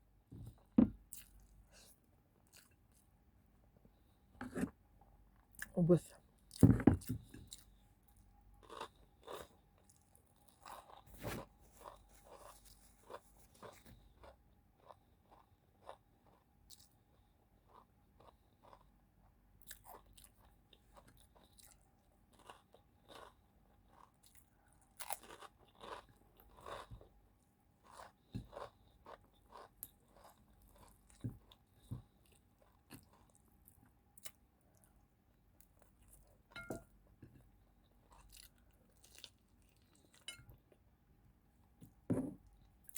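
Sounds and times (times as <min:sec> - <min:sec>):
person chewing crunchy food: 0:08.6 - 0:18.9, 0:19.6 - 0:34.4, 0:38.0 - 0:40.5.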